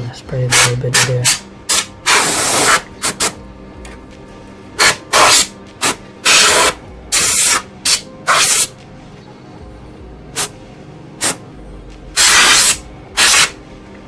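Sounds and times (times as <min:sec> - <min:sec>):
compressed air hissing bursts: 0:00.5 - 0:03.4, 0:04.8 - 0:08.7, 0:10.4 - 0:10.6, 0:11.2 - 0:11.4, 0:12.2 - 0:13.6.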